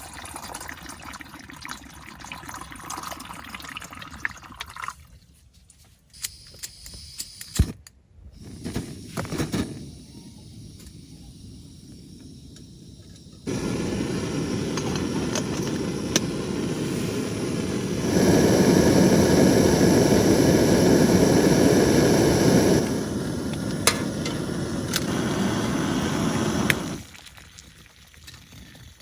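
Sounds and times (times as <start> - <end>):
gas stove flame rushing: 8.3 - 27.3.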